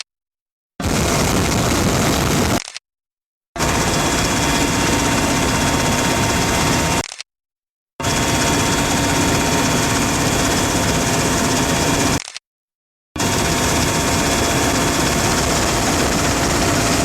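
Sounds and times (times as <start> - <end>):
helicopter noise: 0.8 - 2.6, 3.6 - 7.0, 8.0 - 12.2, 13.2 - 17.0.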